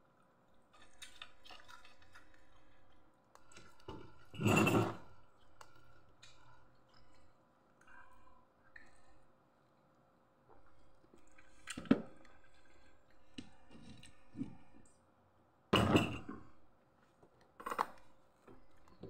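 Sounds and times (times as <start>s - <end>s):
dishes and utensils clinking: 4.3s - 5.1s, 15.8s - 16.4s
tableware clattering: 4.4s - 5.1s, 15.8s - 16.4s.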